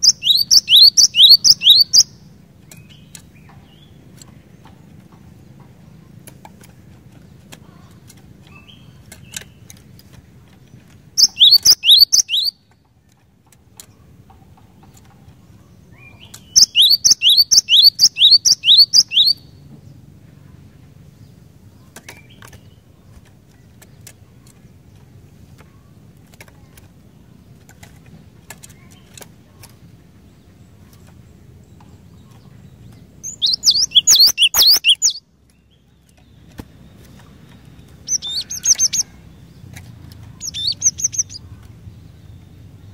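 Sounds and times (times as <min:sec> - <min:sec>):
bird singing high repeated notes: 0:00.0 - 0:02.2, 0:11.2 - 0:12.6, 0:16.4 - 0:19.5, 0:33.2 - 0:35.2, 0:38.0 - 0:39.1, 0:40.4 - 0:41.4.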